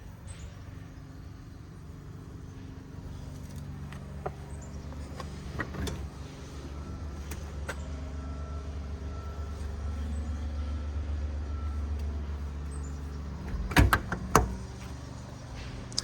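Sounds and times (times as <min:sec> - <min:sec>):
metal door clunking shut: 0:03.7 - 0:06.4, 0:13.2 - 0:15.9.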